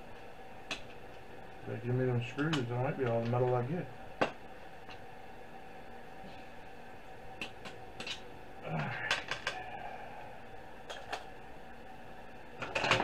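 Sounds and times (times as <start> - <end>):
background hum: 0.0 - 13.0.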